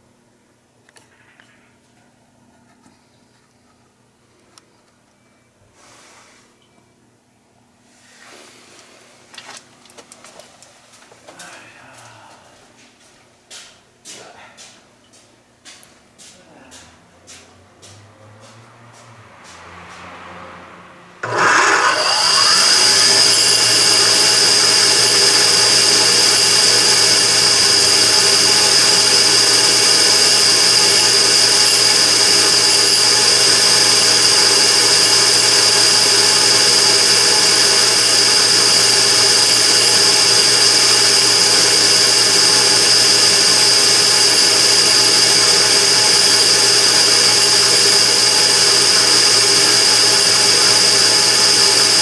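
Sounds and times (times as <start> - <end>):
gas burner whining hum: 21.2 - 52.0.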